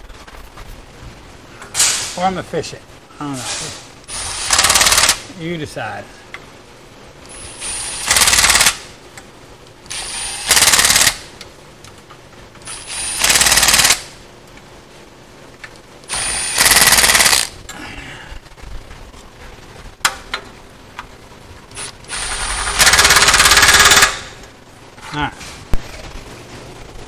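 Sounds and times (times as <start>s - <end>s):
impact wrench spinning and hammering: 4.2s - 5.2s, 7.8s - 8.8s, 9.9s - 11.3s, 12.7s - 14.1s, 16.1s - 17.5s, 21.7s - 24.4s.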